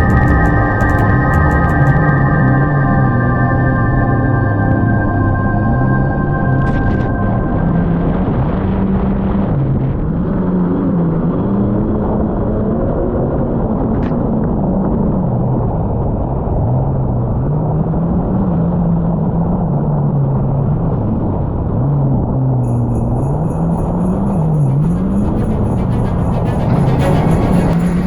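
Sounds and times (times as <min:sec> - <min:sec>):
low bass line music: 0:00.0 - 0:09.4, 0:22.6 - 0:28.0
wind and road noise: 0:06.3 - 0:28.0.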